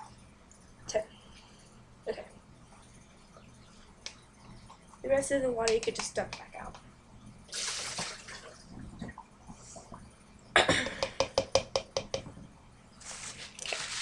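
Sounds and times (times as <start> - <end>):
water splashing from a cup: 7.5 - 9.2, 13.1 - 14.0.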